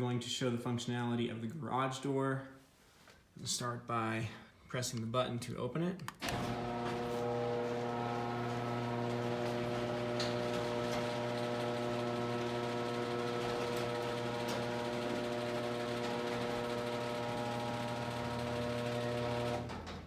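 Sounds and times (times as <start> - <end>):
garage door opener motor hum: 6.2 - 20.0.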